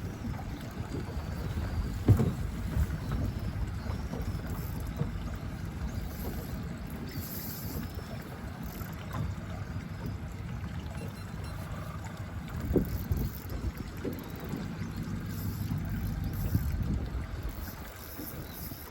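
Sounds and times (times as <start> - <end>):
wind buffeting microphone: 0.0 - 7.1, 12.5 - 18.9.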